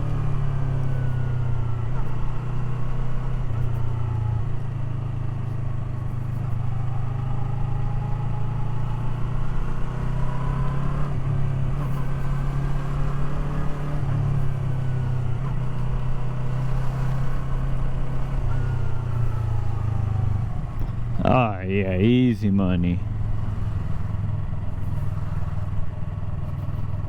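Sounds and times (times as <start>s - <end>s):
motorcycle engine running: 23.0s - 27.0s.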